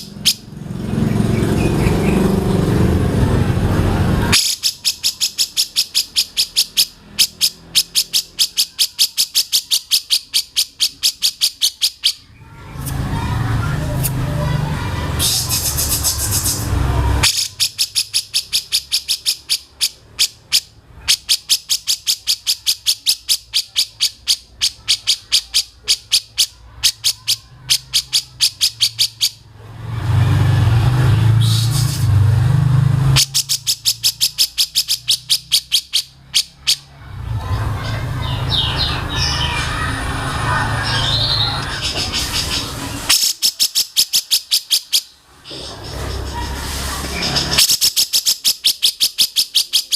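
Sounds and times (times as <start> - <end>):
high bird chirps: 0.0 - 2.8, 4.2 - 13.0, 14.8 - 29.4, 33.1 - 36.9, 37.8 - 49.9
bird call of rapid ticks: 4.3 - 12.3, 17.2 - 29.4, 33.2 - 36.9, 41.6 - 46.5, 47.1 - 49.9.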